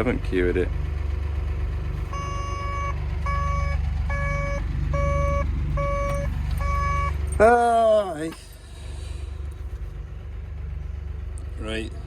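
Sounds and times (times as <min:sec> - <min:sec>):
low engine hum: 0:00.0 - 0:12.0
two-tone warning alarm beeps: 0:02.1 - 0:07.2.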